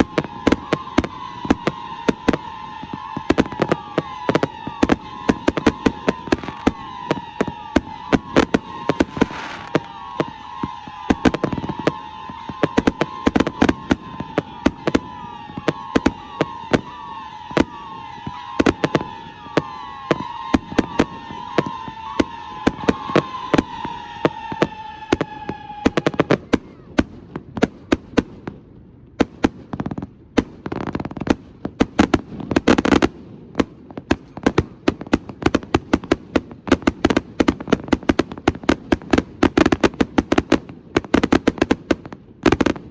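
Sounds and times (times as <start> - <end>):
firework crackling bursts: 0.0 - 26.2
wavering firework whistle: 0.0 - 26.7
fireworks banging: 1.4 - 16.7.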